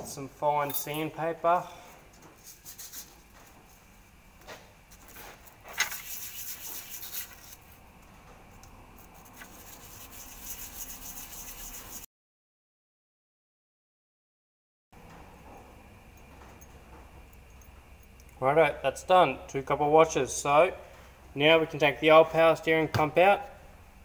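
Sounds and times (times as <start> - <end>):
rubbing on sandpaper: 2.4 - 3.2, 5.7 - 7.7, 9.0 - 12.1.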